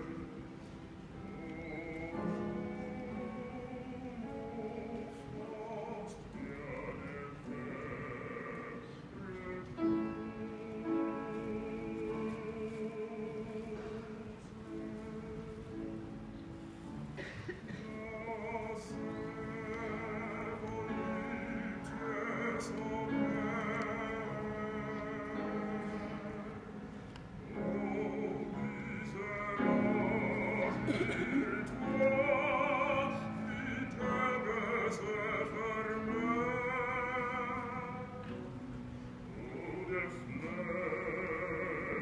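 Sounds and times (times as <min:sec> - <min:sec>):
choir singing: 0:27.5 - 0:38.3.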